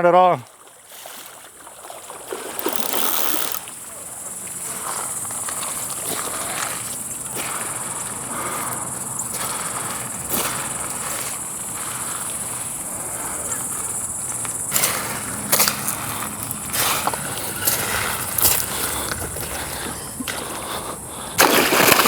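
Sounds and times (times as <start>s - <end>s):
insects droning: 0.0s - 22.0s.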